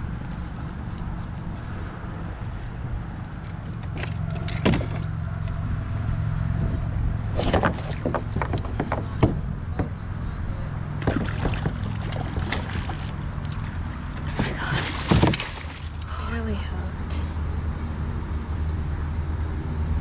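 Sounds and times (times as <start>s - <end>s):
paddle splashes: 7.3s - 9.9s, 11.0s - 16.1s
hull knocks: 7.4s - 10.2s, 11.0s - 15.9s.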